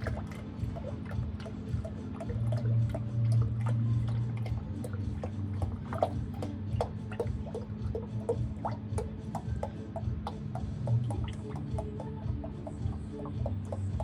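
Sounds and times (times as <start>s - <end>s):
oil dripping: 0.0s - 14.0s
steady low hum: 0.0s - 14.0s.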